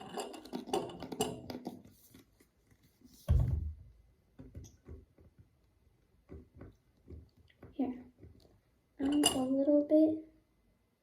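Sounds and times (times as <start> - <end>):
small knocks and rustles on table: 0.0 - 5.6.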